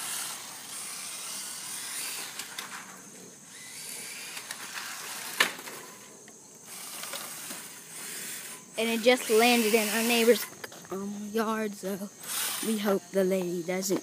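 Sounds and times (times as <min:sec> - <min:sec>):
electric motor whine: 0:00.0 - 0:11.3, 0:12.2 - 0:13.0
rc car hissing rush: 0:00.0 - 0:14.0.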